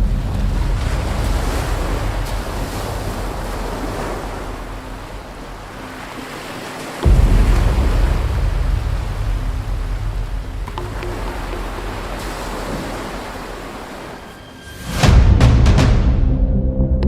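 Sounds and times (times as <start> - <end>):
deep booming cinematic hit: 0.0 - 3.7, 7.0 - 12.6, 15.0 - 17.0.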